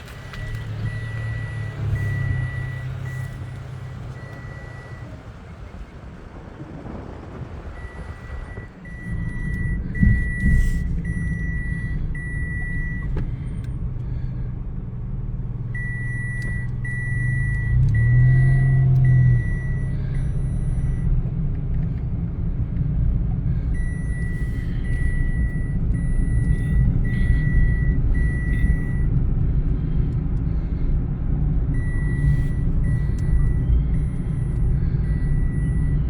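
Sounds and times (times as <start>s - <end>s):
engine and road hum in cabin: 0.0s - 36.0s
car warning chime beeping: 0.1s - 5.9s, 7.8s - 13.8s, 15.6s - 21.2s, 23.7s - 29.9s, 31.5s - 36.0s.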